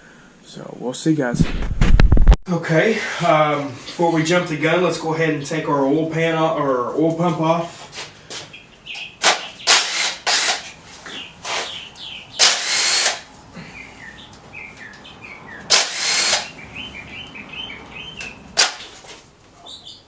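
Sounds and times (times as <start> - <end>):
birds chirping: 5.3 - 20.0
power drill bursts: 9.2 - 10.8, 12.4 - 13.3, 15.7 - 16.5, 18.6 - 19.0.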